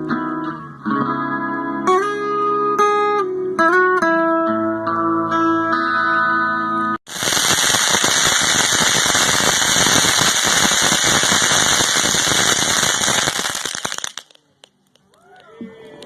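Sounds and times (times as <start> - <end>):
bonfire crackling: 7.1 - 15.2.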